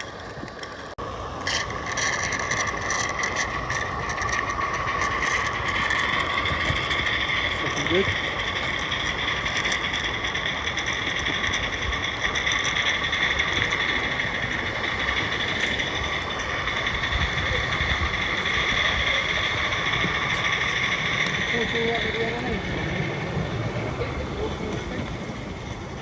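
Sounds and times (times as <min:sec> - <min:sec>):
light mechanical rattle: 0:00.0 - 0:26.0
steam hissing: 0:01.0 - 0:26.0.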